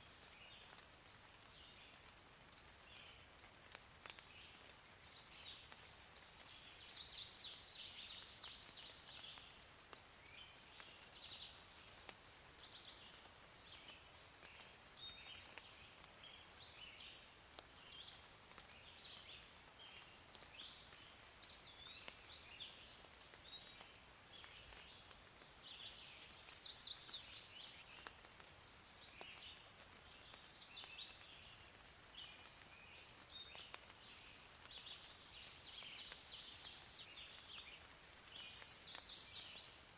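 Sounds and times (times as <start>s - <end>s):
faint steady hiss: 0.0s - 39.9s
birds chirping: 5.7s - 11.6s, 25.8s - 28.1s, 34.8s - 39.8s.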